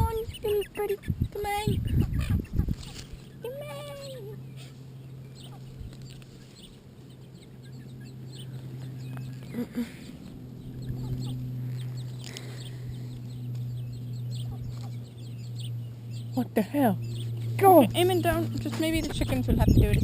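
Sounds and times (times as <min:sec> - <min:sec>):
chickens clucking: 0:00.0 - 0:20.0
small birds chirping: 0:00.0 - 0:20.0
steady low hum: 0:00.0 - 0:20.0.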